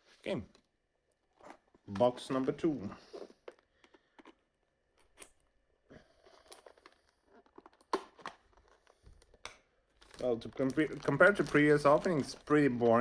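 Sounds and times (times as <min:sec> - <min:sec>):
packaging crinkling and tearing: 0:06.1 - 0:13.0
packaging ripping: 0:06.2 - 0:13.0.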